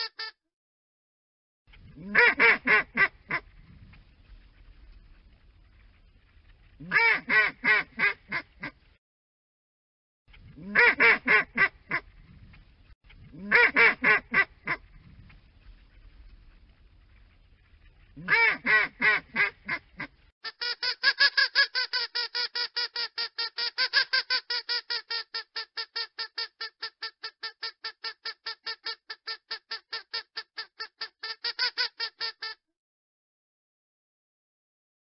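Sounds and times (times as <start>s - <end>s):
duck quacking: 1.9s - 4.0s, 6.7s - 8.9s, 10.6s - 12.4s, 13.3s - 16.0s, 17.0s - 32.6s.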